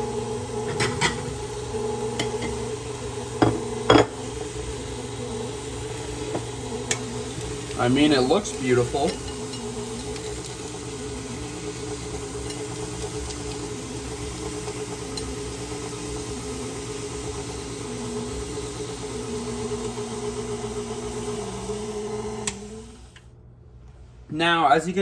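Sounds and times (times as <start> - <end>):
stand mixer motor humming: 0.0 - 23.2.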